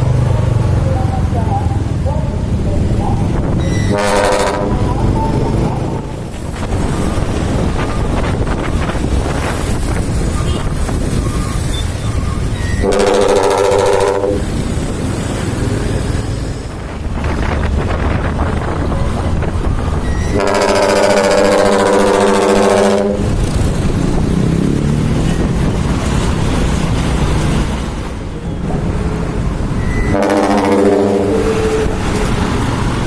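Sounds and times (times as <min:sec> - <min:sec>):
heavy truck engine running: 0:00.0 - 0:33.0
truck air horn blast: 0:03.7 - 0:04.8, 0:12.7 - 0:14.5, 0:20.3 - 0:23.3, 0:30.0 - 0:32.0.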